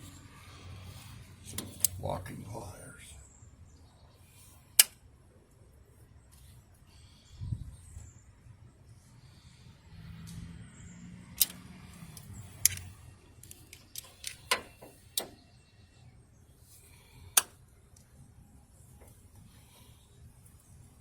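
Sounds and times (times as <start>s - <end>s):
locking pliers clicking on metal: 1.5s - 2.0s, 11.4s - 15.3s.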